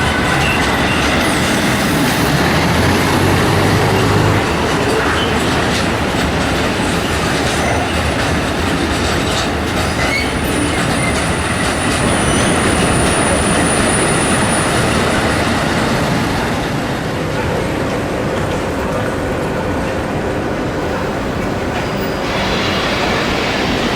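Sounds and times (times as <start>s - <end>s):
high wheel squeal: 0.0s - 6.0s, 9.7s - 15.9s
train wheels rumbling on rails: 0.0s - 23.9s.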